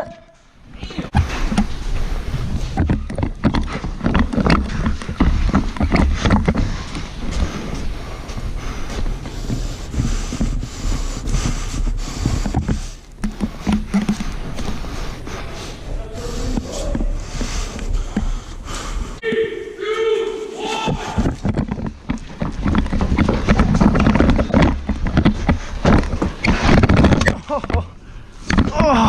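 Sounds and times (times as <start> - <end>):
microphone rumbling and rustling: 0.6 - 19.2, 20.9 - 29.0
sharp clicks and knocks: 1.1 - 7.9, 9.0 - 14.8, 21.2 - 28.9.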